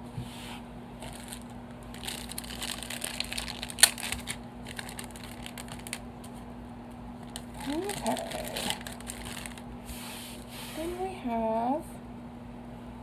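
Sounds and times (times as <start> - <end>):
plastic packaging crinkling: 1.0 - 6.4, 7.2 - 9.7.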